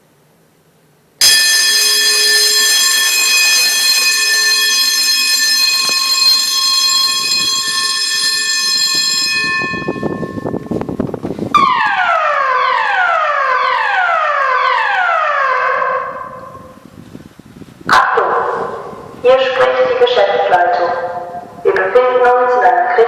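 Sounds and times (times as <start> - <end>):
steady electronic alarm tone: 1.2 - 11.0, 11.6 - 16.8
downward sweeping evacuation tone: 1.2 - 17.0.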